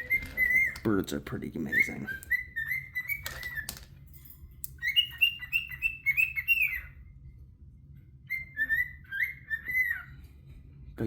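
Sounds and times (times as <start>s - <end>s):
bird whistled chirps: 1.8s - 3.7s, 4.8s - 7.0s, 8.2s - 10.1s.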